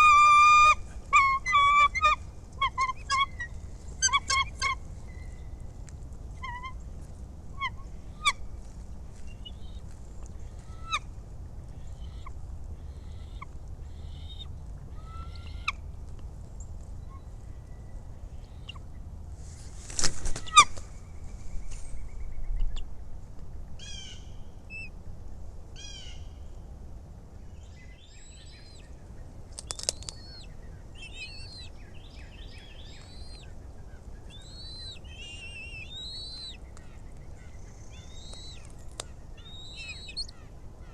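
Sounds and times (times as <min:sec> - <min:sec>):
songbirds singing: 0:00.0 - 0:19.2, 0:20.2 - 0:25.0, 0:25.7 - 0:26.8, 0:27.4 - 0:40.9
eagle high chirps: 0:28.1 - 0:28.9, 0:29.6 - 0:31.7, 0:32.3 - 0:33.5, 0:34.2 - 0:40.4.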